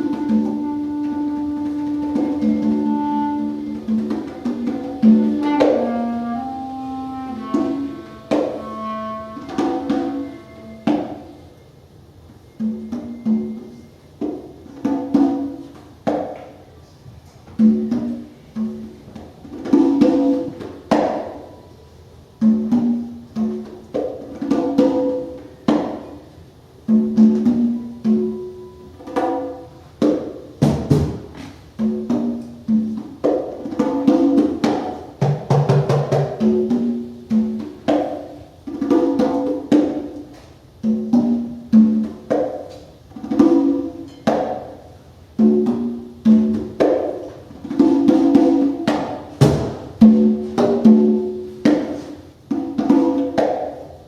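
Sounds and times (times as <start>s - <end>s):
plucked ringing notes: 0.0s - 11.5s
congas playing: 0.0s - 54.0s.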